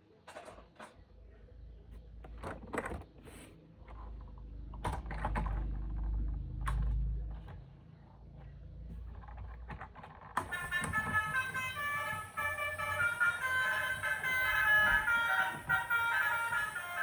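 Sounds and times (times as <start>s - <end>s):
plastic toy clicks and rattles: 9.1s - 17.0s.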